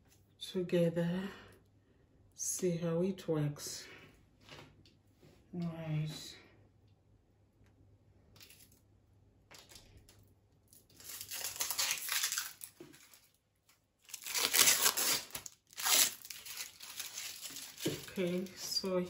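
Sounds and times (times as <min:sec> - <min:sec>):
plastic packaging crinkling and tearing: 0:09.6 - 0:19.0.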